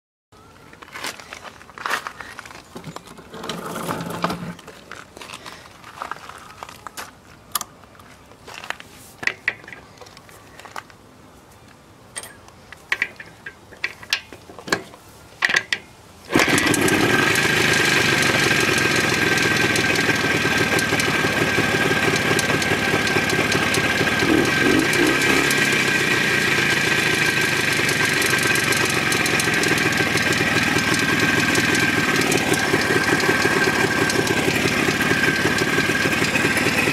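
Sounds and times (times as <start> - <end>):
motorcycle engine starting and idling: 3.2 - 4.6, 16.3 - 36.9.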